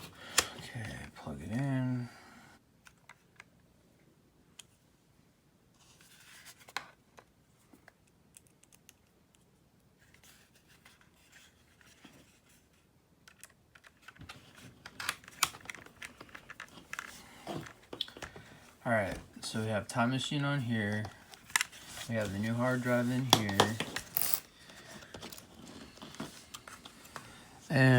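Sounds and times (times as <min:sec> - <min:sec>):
hands handling a laptop: 0:13.4 - 0:19.5, 0:20.5 - 0:27.4.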